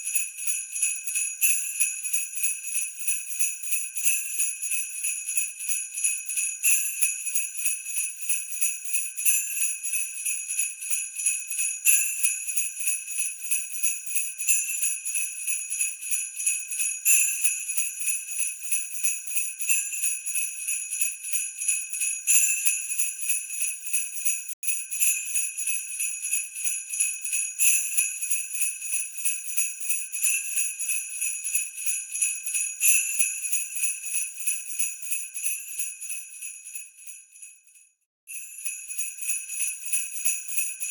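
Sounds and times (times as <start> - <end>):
sleigh bells jingling: 38.3 - 40.9.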